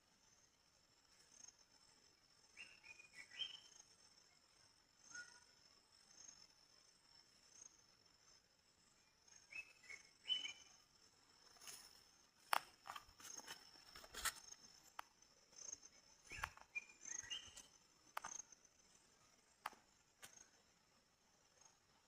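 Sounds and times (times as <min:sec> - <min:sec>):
insects droning: 0:00.0 - 0:22.0
bird chirping: 0:02.4 - 0:06.5, 0:09.1 - 0:12.0, 0:12.8 - 0:20.7.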